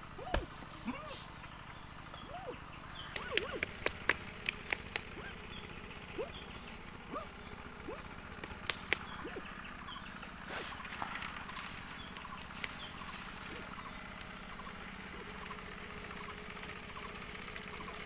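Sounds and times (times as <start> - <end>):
chirping animal calls: 0.1 - 18.0
high-pitched insect whine: 9.0 - 18.0.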